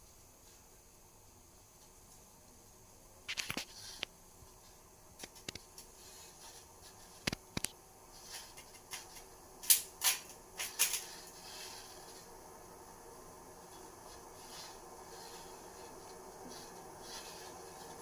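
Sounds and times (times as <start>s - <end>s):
kitchen utensils clicking and tapping: 8.3s - 11.4s.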